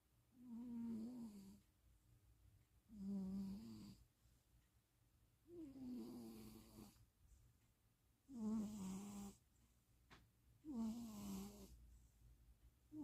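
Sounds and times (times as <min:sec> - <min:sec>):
cat snoring: 0:00.4 - 0:01.6, 0:02.9 - 0:04.0, 0:05.5 - 0:07.0, 0:08.3 - 0:09.4, 0:10.6 - 0:11.8.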